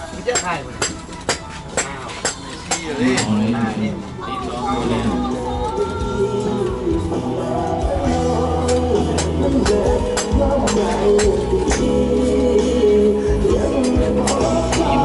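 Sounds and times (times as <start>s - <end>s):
gliding melody over heavy bass: 3.4s - 15.0s.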